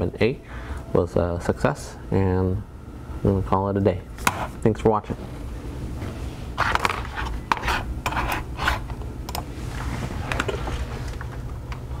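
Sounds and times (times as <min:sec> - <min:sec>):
steady low hum: 0:00.0 - 0:12.0
objects scraping and clicking on workbench: 0:06.6 - 0:08.9.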